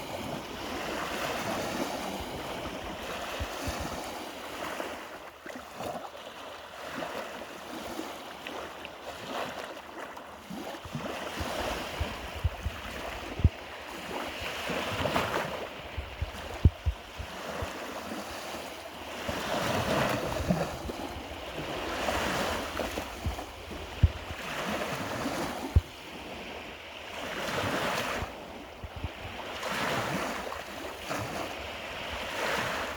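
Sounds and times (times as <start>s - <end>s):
wind buffeting microphone: 0.0s - 5.0s, 10.8s - 18.2s, 19.2s - 26.8s, 27.6s - 32.9s
small waves breaking ashore: 0.0s - 32.9s.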